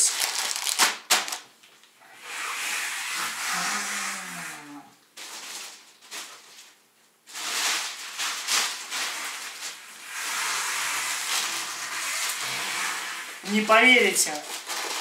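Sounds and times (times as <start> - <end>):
plastic bag rustling: 0.0 - 1.9, 3.2 - 15.0.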